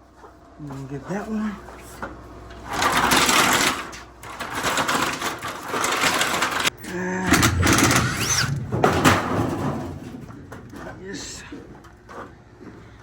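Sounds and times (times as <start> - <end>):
high metal screech: 7.3 - 9.0
sheet metal rattling and banging: 7.3 - 11.1.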